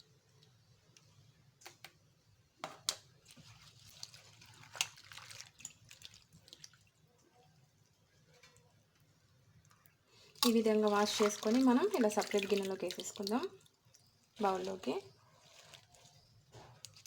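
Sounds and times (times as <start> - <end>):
water splashing and dripping: 3.2 - 7.1, 10.4 - 17.0.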